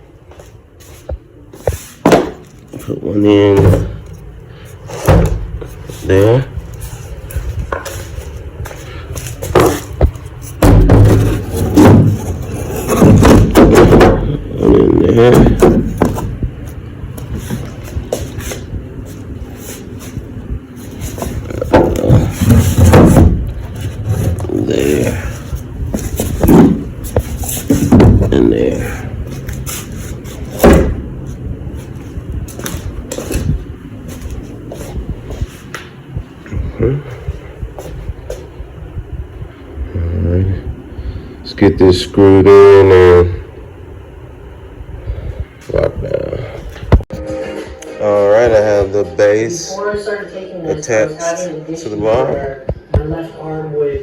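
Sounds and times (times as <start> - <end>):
dense noise: 0.0 - 51.3
solid wooden thud: 2.0 - 2.4, 5.0 - 5.6, 9.5 - 12.2, 12.9 - 14.2, 30.6 - 31.0.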